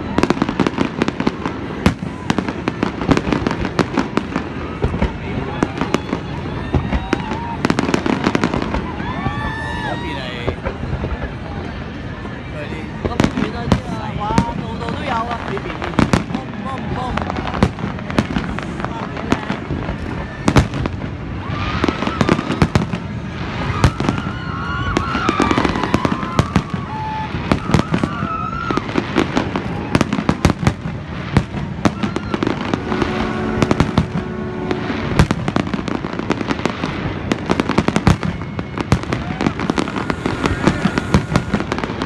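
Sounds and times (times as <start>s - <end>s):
fireworks bursting and crackling: 0.0s - 42.0s
steady pitched tone: 39.4s - 42.0s.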